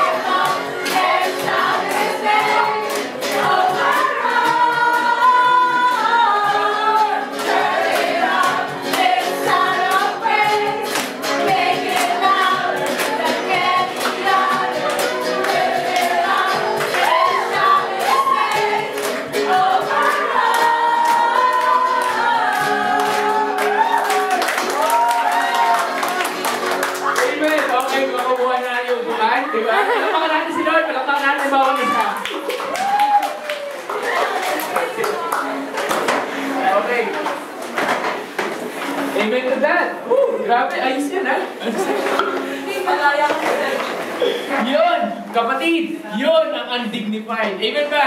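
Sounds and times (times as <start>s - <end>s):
group singing praise song: 0.0s - 27.4s.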